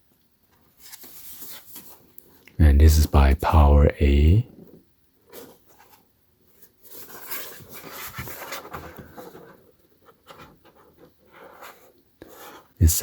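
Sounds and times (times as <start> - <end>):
packaging rustling and scraping: 0.8 - 2.2, 5.3 - 12.7.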